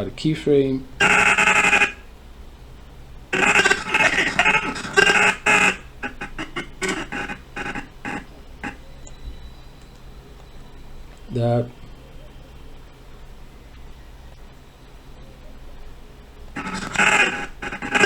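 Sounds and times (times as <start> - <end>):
choppy garbled recorded voice: 1.0 - 2.0, 3.3 - 8.8, 16.5 - 18.0.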